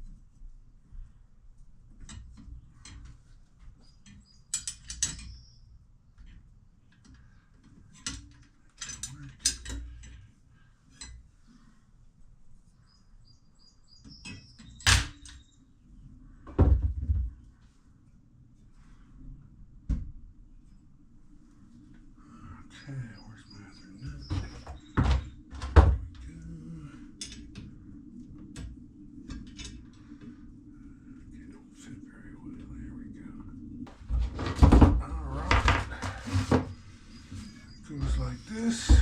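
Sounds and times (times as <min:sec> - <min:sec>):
metal tools clinking and knocking: 0:04.0 - 0:05.5, 0:07.9 - 0:10.2.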